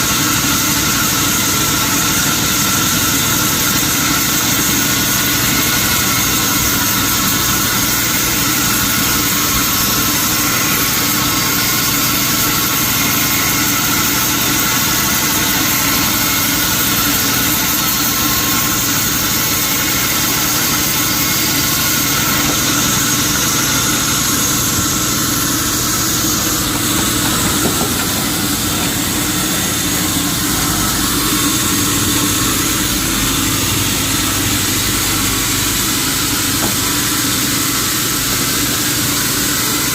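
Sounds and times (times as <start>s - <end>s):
sawmill machinery drone: 0.0s - 39.9s
high whine: 5.4s - 37.3s.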